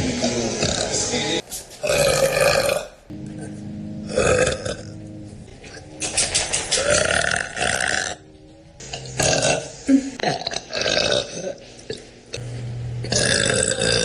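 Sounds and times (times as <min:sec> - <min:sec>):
woman burping: 0:09.2 - 0:11.6, 0:13.0 - 0:14.0.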